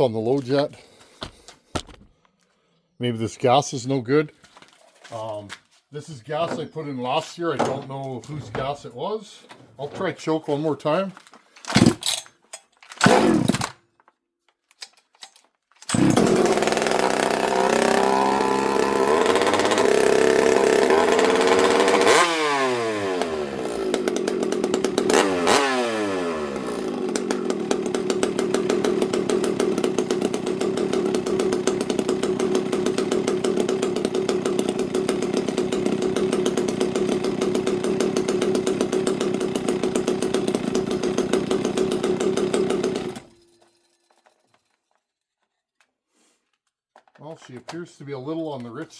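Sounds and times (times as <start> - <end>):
chainsaw starting and running: 11.8 - 12.0, 12.9 - 13.8, 15.8 - 44.4.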